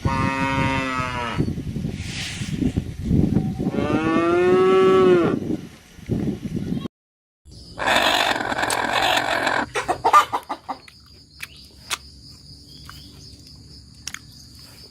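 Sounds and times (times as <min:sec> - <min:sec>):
chicken squawking: 0:07.8 - 0:10.8
chicken clucking: 0:07.9 - 0:11.0.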